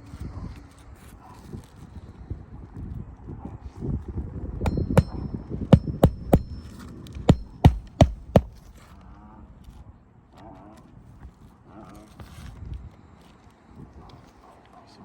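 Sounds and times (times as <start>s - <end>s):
hammer driving nails into shingles: 4.7s - 6.7s, 7.3s - 8.6s
metallic ring: 4.7s - 6.7s, 7.3s - 8.6s.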